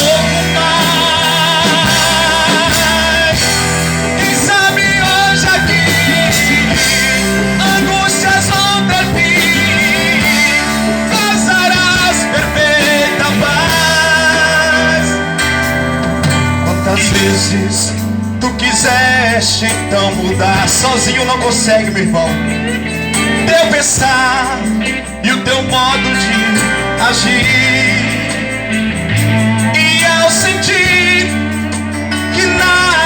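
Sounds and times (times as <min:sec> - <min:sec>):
bass: 0:00.0 - 0:33.0
drums with a steady beat: 0:00.0 - 0:33.0
wavering lead melody with vibrato: 0:00.0 - 0:33.0.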